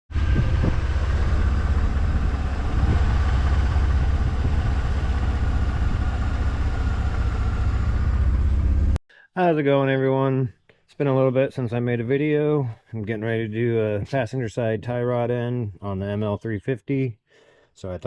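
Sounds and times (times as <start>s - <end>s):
engine idling: 0.1s - 9.0s.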